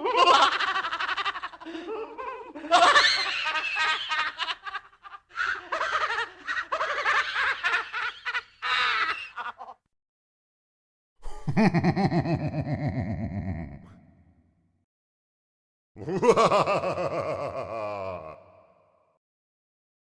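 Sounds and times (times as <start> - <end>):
spooky theatrical laughter: 0.0 - 9.9, 11.3 - 14.0, 16.0 - 19.0.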